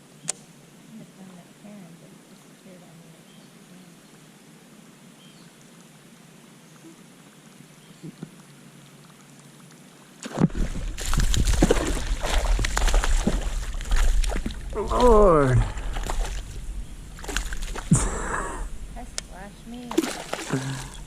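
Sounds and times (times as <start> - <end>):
fish splashing in water: 10.2 - 18.1, 19.8 - 21.0.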